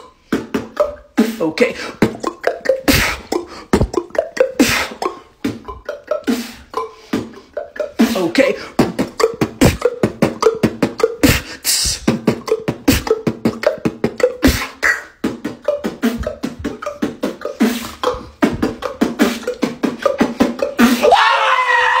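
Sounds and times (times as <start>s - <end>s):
beatboxing percussive hits: 0.0s - 22.0s
high wavering vocal cry: 10.8s - 22.0s.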